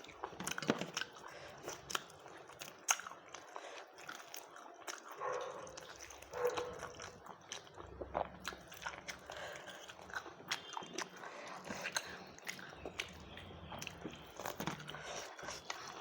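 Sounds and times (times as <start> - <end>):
person chewing food: 0.0 - 16.0.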